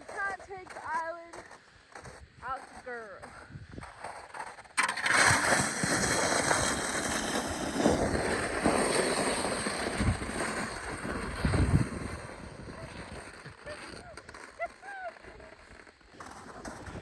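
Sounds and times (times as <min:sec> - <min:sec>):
sled scraping on snow: 0:00.0 - 0:17.0
wind buffeting microphone: 0:09.9 - 0:13.6.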